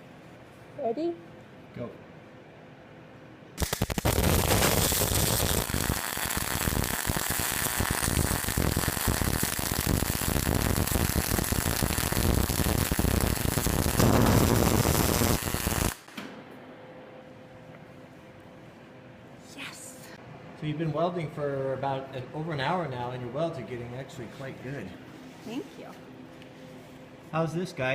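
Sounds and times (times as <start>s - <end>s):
welding arc crackling: 3.6s - 16.2s.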